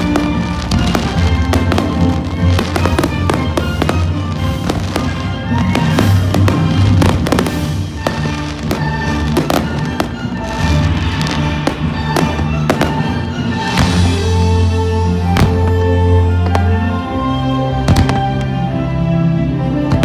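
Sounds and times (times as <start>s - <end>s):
music over loudspeakers: 0.0s - 14.2s
fireworks bangs and crackle: 0.0s - 16.8s, 17.8s - 18.7s.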